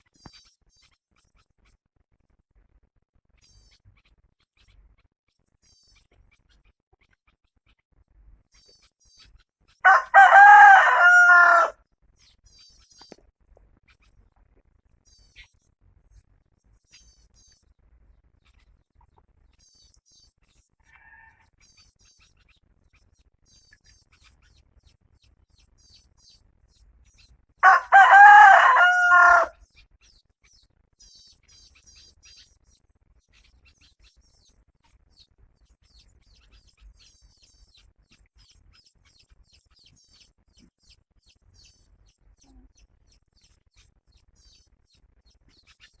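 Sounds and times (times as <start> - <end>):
small birds chirping: 0.0 - 46.0
rooster crowing: 9.8 - 11.8, 20.8 - 21.5, 27.6 - 29.6.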